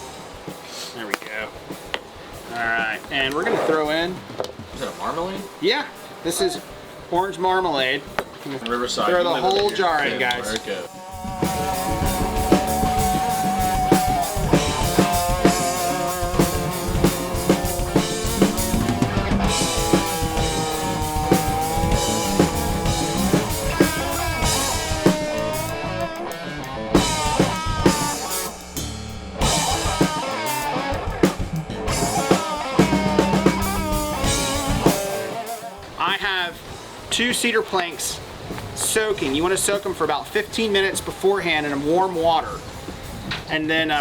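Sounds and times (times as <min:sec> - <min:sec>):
drum kit steady beat: 0:00.0 - 0:44.0
lead electric guitar: 0:09.5 - 0:36.0.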